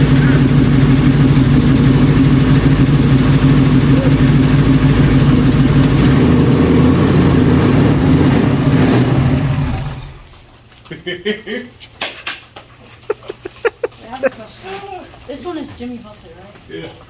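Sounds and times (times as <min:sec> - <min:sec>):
car engine idling: 0:00.0 - 0:10.4.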